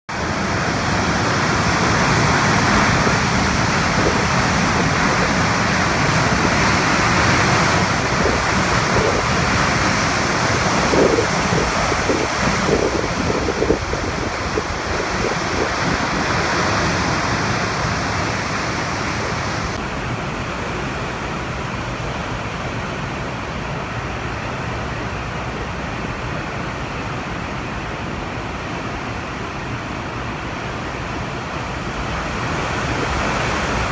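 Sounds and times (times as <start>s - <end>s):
wind buffeting microphone: 0.1s - 19.8s, 30.3s - 33.9s
heavy surf rushing: 0.1s - 33.9s
strong wind: 0.1s - 33.9s.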